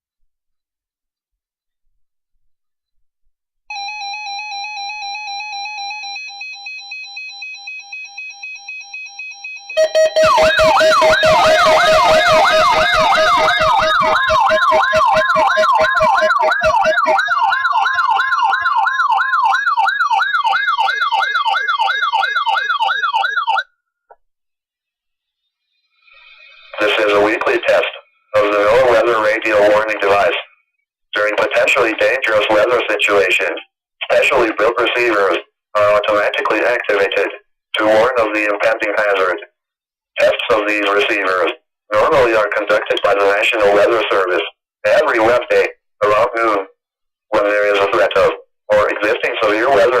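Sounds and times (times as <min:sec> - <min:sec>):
warbling alarm tone: 0:03.7 - 0:23.7
siren sweeps: 0:09.7 - 0:23.6.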